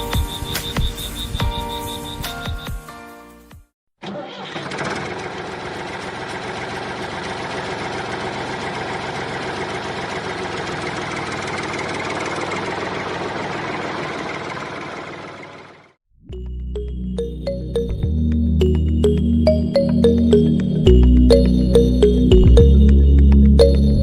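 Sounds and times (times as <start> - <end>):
tractor engine running: 4.0 - 16.0.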